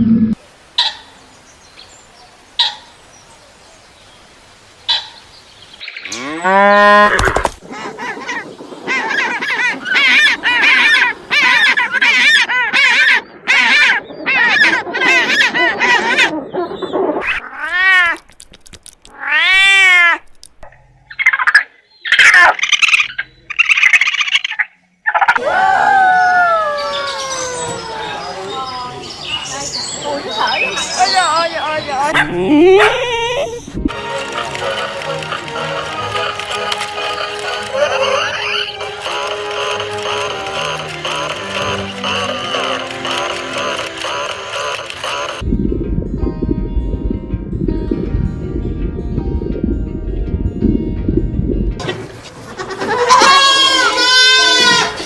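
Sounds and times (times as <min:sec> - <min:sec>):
animal calls: 0:06.0 - 0:18.2, 0:20.8 - 0:45.4.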